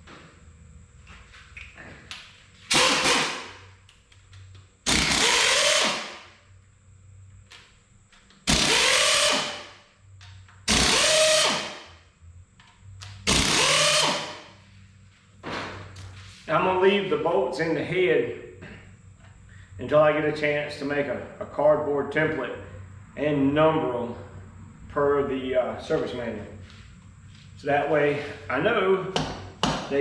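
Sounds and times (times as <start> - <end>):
cordless power tool motor: 4.9 - 6.2, 8.5 - 9.7, 10.7 - 11.8, 13.2 - 14.4.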